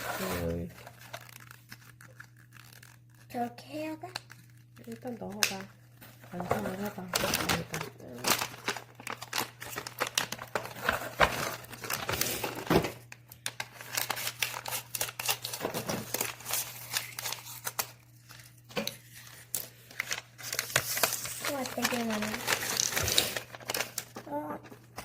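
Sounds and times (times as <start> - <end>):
packaging tearing: 0.0 - 12.7, 13.3 - 25.0
packaging crinkling: 0.0 - 25.0.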